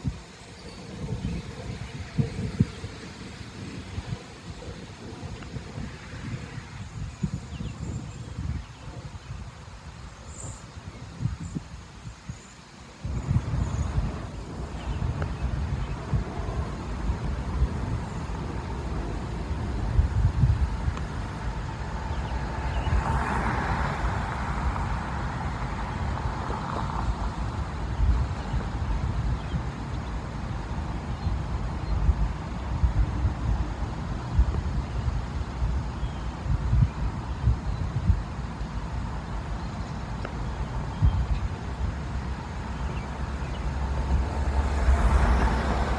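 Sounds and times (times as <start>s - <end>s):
road traffic rumble: 0.0s - 45.9s
vehicle passing: 13.5s - 27.9s, 41.7s - 45.9s.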